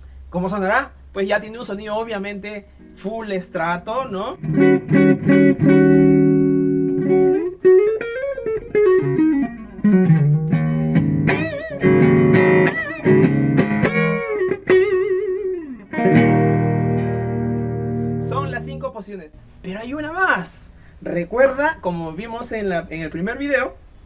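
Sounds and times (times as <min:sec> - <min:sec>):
electric guitar with string bends: 0:02.6 - 0:19.6.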